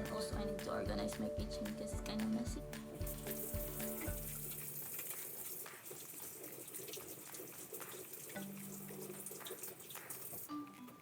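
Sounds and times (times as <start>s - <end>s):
background music: 0.0s - 4.9s, 10.5s - 11.0s.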